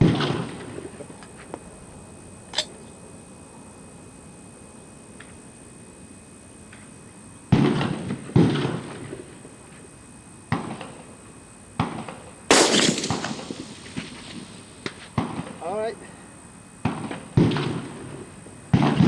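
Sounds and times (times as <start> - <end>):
rifle shots echoing: 12.5 - 15.4.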